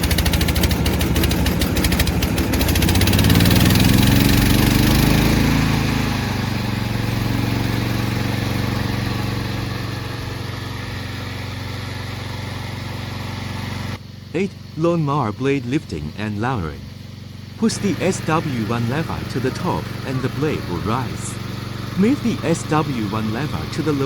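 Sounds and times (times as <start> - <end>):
electric starter cranking: 0.0 - 11.0
small petrol engine revving and idling: 0.0 - 24.0.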